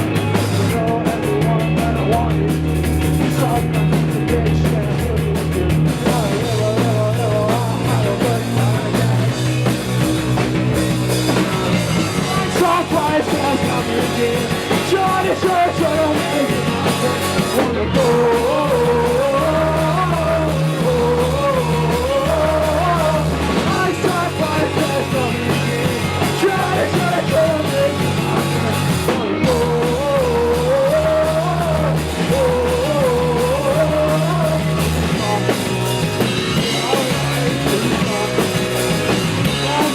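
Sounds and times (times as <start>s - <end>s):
rock band playing live: 0.0s - 39.9s.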